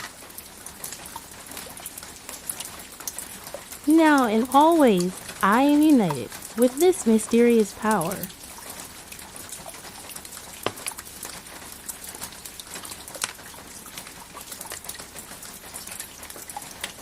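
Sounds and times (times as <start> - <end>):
steady rain: 0.0 - 17.0
drops ticking on a hard surface: 9.1 - 14.1.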